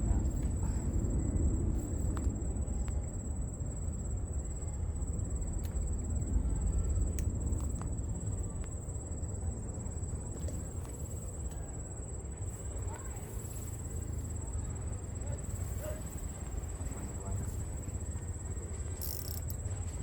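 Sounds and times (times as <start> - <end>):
insect trill: 0.1 - 20.0
faint clicks: 19.0 - 19.7.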